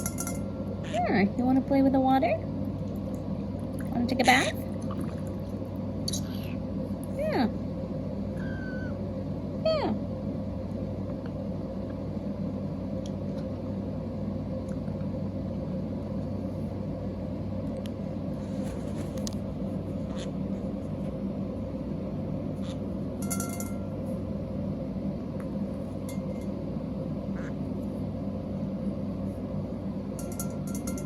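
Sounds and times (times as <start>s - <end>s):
low electrical hum: 0.0s - 31.0s
parrot call: 8.4s - 9.0s.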